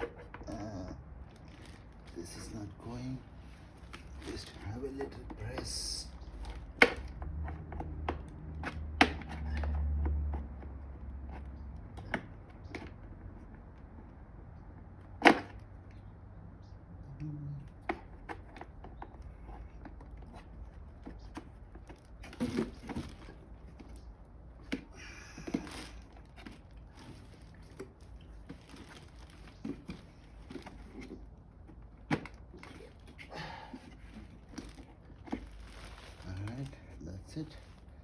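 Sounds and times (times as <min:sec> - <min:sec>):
rustling: 0:00.0 - 0:07.1, 0:17.7 - 0:38.0.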